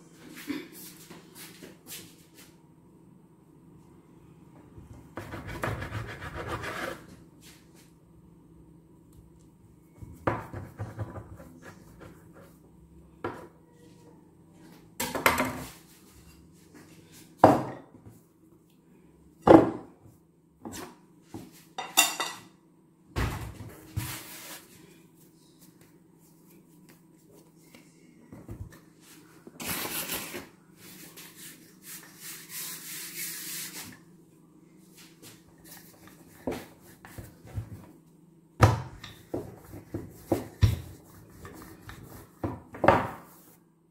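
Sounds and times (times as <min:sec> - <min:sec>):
utensils clattering on worktop: 0:21.8 - 0:22.5.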